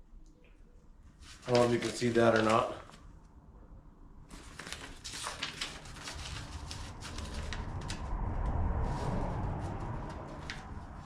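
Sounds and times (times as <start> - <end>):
paper crinkling: 1.2 - 3.1, 4.3 - 8.0.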